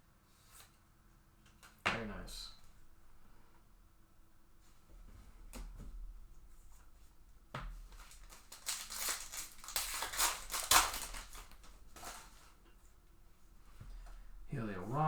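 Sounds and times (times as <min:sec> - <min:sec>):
foil crinkling: 0:07.8 - 0:12.6
foil wrapper tearing: 0:08.0 - 0:12.5.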